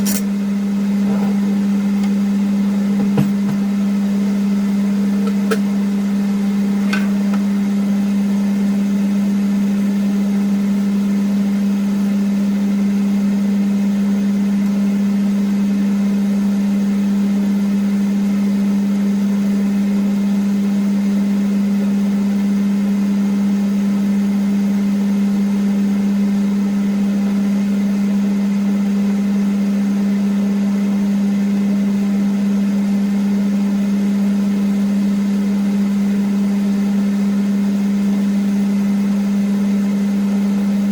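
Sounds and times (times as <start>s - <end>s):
ventilation fans humming: 0.0s - 8.5s, 40.0s - 40.9s.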